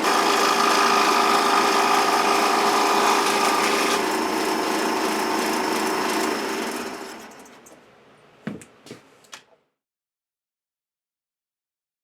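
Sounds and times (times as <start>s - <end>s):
power tool motor winding down: 0.0s - 7.5s.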